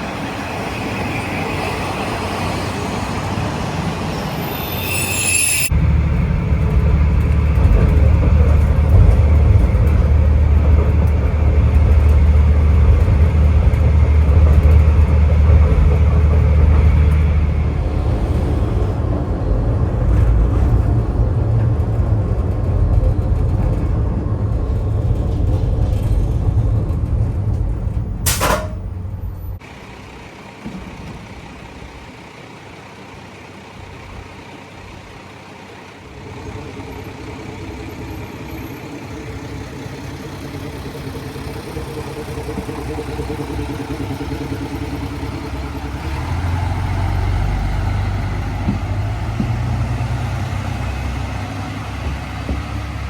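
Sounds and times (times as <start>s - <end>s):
low rumble of vehicle engine: 1.2s - 53.0s
sharp click: 28.3s - 28.8s.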